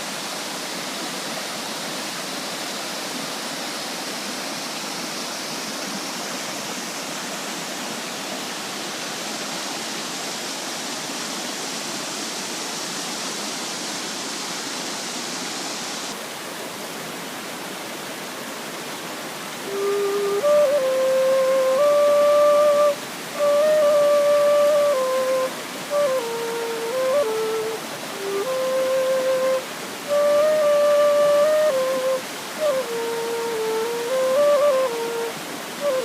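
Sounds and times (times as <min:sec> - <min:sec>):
waterfall rushing: 0:00.0 - 0:36.0
flute holding notes: 0:19.6 - 0:36.0.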